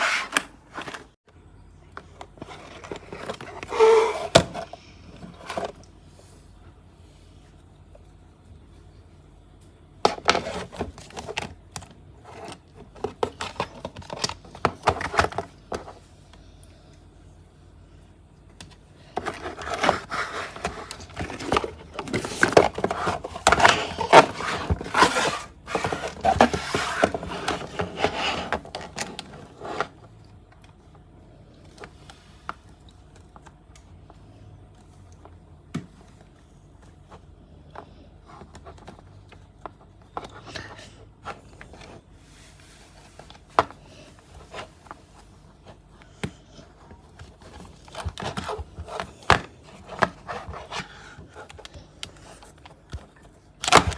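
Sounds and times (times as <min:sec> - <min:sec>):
hands handling toy packaging: 0:02.0 - 0:05.9, 0:10.1 - 0:16.0, 0:18.6 - 0:30.0, 0:46.7 - 0:53.9.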